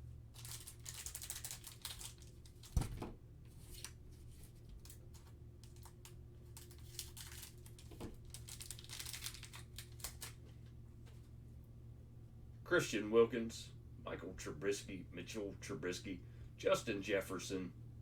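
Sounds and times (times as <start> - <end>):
wrapper crinkling and tearing: 0.3 - 2.9, 3.6 - 10.4
cards rustling: 0.4 - 2.8, 3.5 - 10.5.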